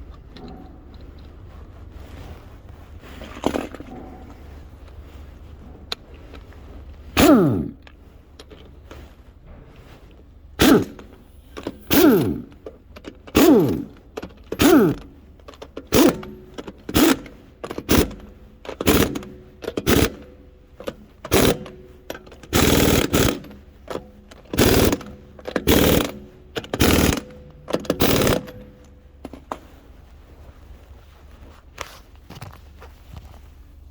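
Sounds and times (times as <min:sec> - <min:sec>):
impact wrench hammering: 0:07.2 - 0:07.9, 0:10.6 - 0:29.4.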